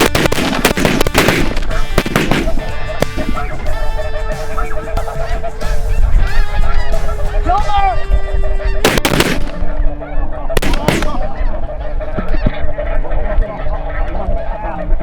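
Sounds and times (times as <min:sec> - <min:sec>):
shotgun shots: 0:00.0 - 0:03.7, 0:08.8 - 0:09.7, 0:10.6 - 0:11.4
geese honking: 0:00.0 - 0:15.0.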